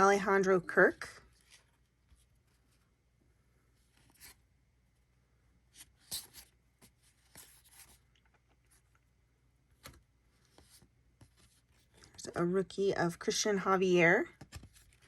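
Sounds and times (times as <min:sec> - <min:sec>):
cards being handled and flipped: 0:03.8 - 0:04.4, 0:05.8 - 0:09.0, 0:09.7 - 0:12.2, 0:14.3 - 0:15.0.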